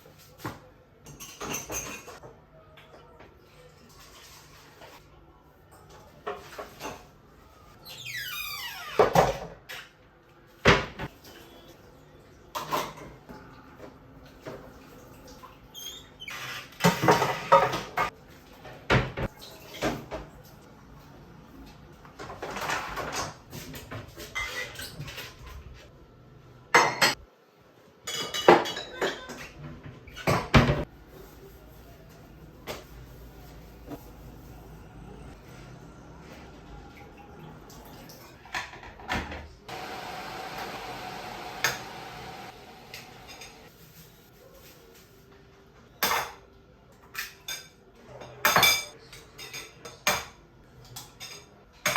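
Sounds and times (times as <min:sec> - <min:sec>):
rustling and clatter of objects: 0:16.6 - 0:26.0, 0:43.2 - 0:45.9.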